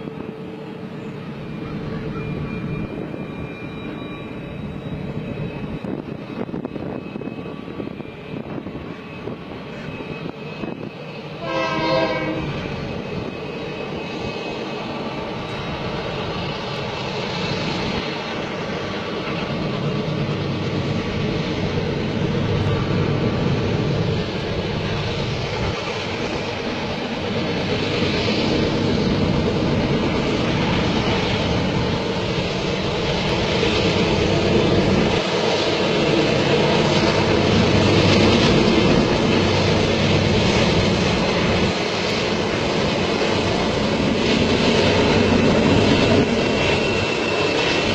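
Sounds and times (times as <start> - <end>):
train running on rails: 0.0 - 47.9
train horn blast: 11.4 - 12.7.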